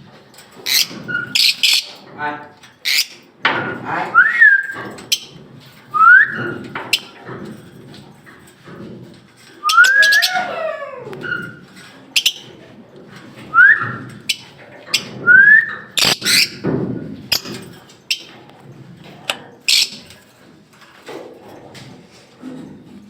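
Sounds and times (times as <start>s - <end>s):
rising squeaky bird calls: 9.6s - 11.6s.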